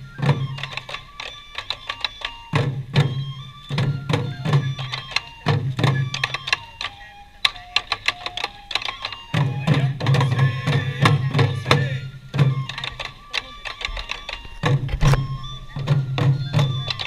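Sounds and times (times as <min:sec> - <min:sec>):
rapid sharp drum strikes: 0:09.4 - 0:12.8.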